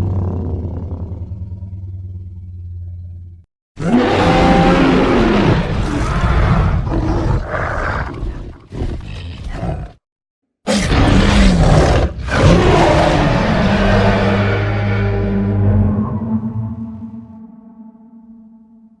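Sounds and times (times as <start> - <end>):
monster roar: 3.8 - 10.0, 10.7 - 17.1.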